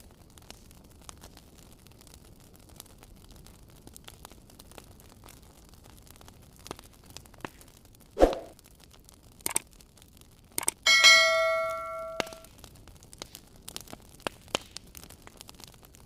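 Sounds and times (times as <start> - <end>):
wood fire crackling: 0.0 - 16.0
ringing metallic clang: 10.9 - 12.4.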